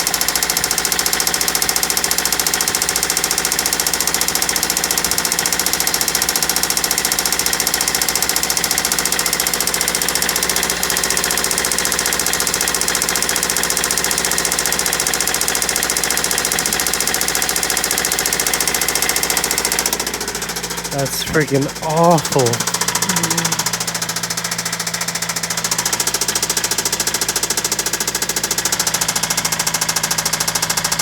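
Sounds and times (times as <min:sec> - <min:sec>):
car engine running with knock: 0:00.0 - 0:20.9.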